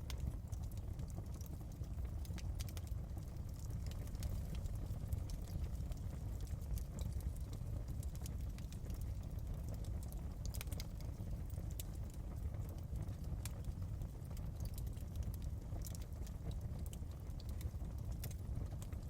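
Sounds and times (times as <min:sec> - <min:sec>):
fire crackling and popping: 0:00.0 - 0:19.0
fire flames rumbling: 0:00.0 - 0:19.0.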